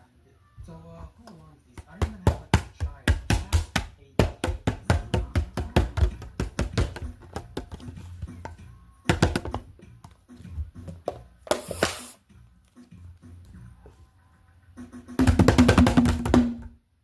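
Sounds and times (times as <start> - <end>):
music with quick percussive beat: 1.8 - 12.2, 14.5 - 16.8.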